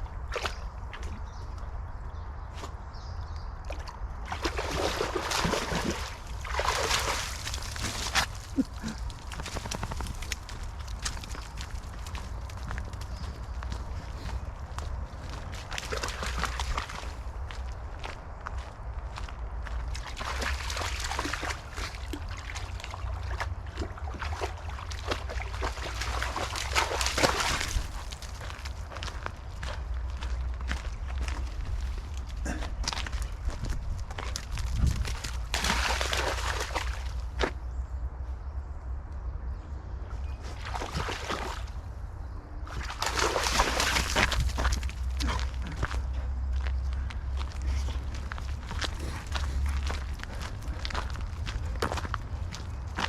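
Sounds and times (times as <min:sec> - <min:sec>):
water splashing and sloshing: 0:00.0 - 0:01.8, 0:03.6 - 0:18.2, 0:19.6 - 0:37.6, 0:40.4 - 0:42.0, 0:42.6 - 0:46.7, 0:47.4 - 0:53.0
footsteps on outdoor path: 0:04.3 - 0:37.8, 0:42.7 - 0:53.0
steady low rumble: 0:41.6 - 0:53.0.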